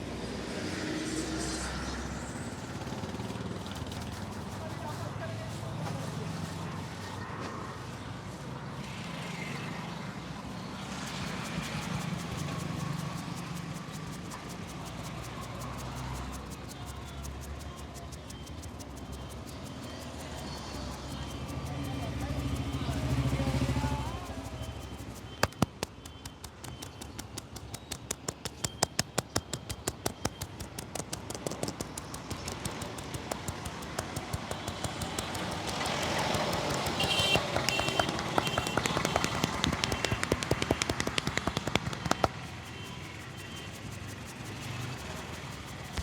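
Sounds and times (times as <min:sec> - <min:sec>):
hand slaps on a head: 0:25.4 - 0:42.5.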